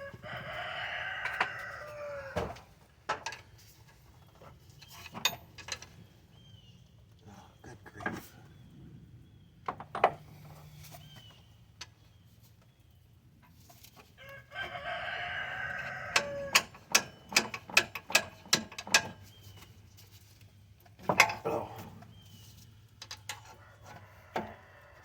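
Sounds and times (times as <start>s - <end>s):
rooster crowing: 0.0s - 2.6s, 14.2s - 16.7s, 23.7s - 25.0s.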